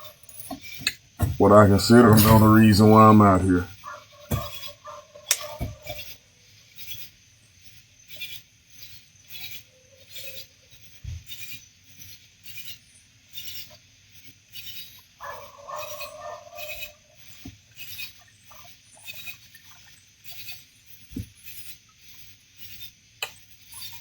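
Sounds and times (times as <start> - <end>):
night insects chirping: 0.0 - 24.0
dull knocks: 1.2 - 1.4, 4.3 - 4.6, 5.5 - 6.0.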